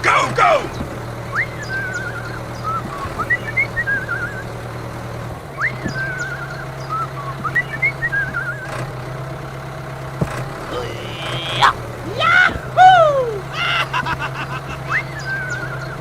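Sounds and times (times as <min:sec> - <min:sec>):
low motor hum: 0:00.0 - 0:16.0
whistled call with warbling trill: 0:00.6 - 0:04.8, 0:05.5 - 0:08.8, 0:10.7 - 0:16.0.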